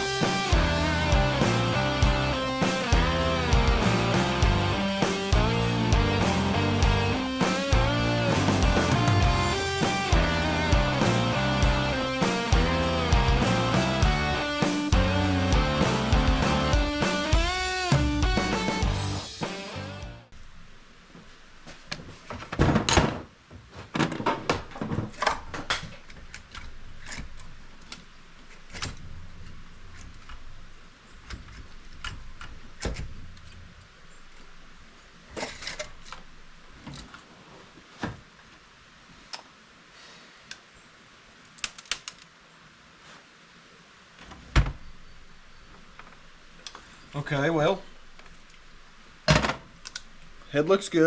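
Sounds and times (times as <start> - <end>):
metallic clicks of hand tools: 41.6 - 42.3.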